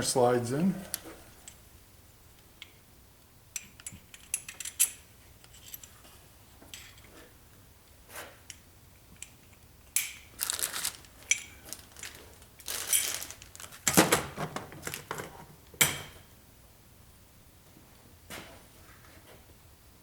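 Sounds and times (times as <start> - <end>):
metal hardware clicking and clinking: 3.6 - 6.0, 9.2 - 13.4.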